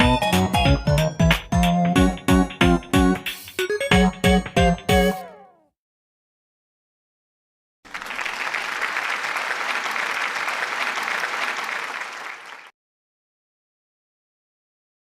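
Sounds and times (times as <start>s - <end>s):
crowd applauding: 7.9s - 12.7s.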